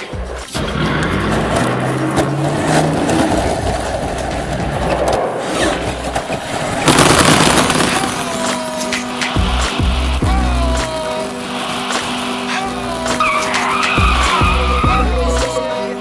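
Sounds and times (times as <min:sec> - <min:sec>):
tyres scrabbling over dirt: 0:00.2 - 0:08.1.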